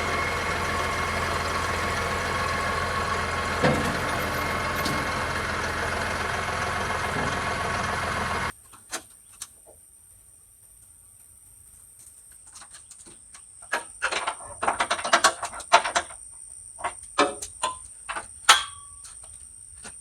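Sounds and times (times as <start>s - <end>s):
metal clanks and knocks: 0.0s - 8.5s.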